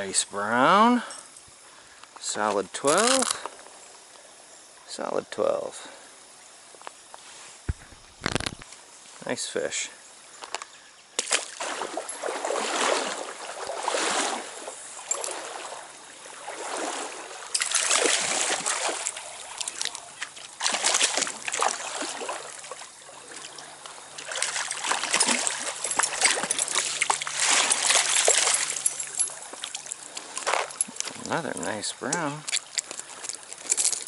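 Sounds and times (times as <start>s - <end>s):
stream water splashing: 11.2s - 34.0s.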